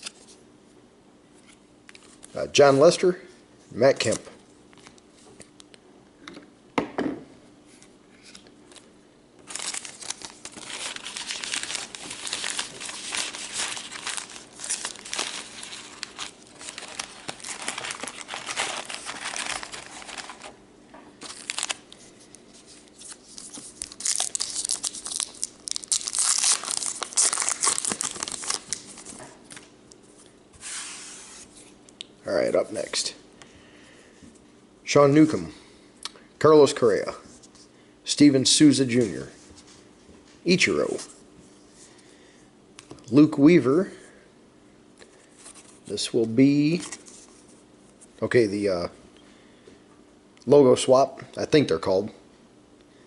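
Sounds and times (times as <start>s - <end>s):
wrapper tearing and crinkling: 9.4s - 20.6s, 21.2s - 21.9s, 22.9s - 29.6s.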